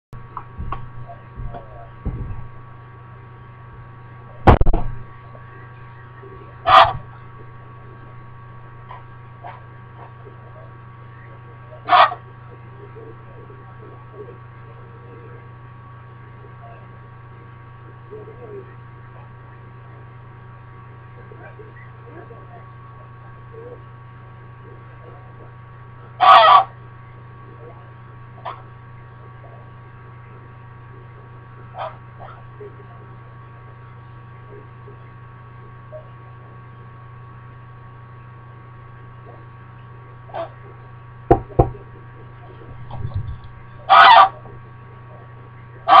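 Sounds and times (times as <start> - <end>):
electrical hum: 0.1 - 46.0
goose calling: 6.6 - 7.1, 11.8 - 12.3, 26.2 - 26.8, 40.3 - 40.6, 43.8 - 44.5
loud goose honk: 6.6 - 7.1, 11.8 - 12.2, 26.2 - 26.8, 43.8 - 44.5.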